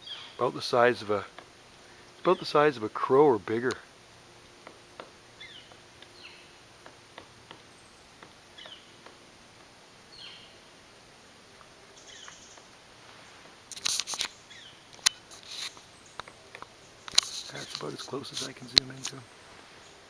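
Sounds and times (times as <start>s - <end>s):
birds chirping: 0.0s - 20.0s
woodpecker knocking on wood: 4.4s - 9.2s
rustling noise: 12.6s - 20.0s.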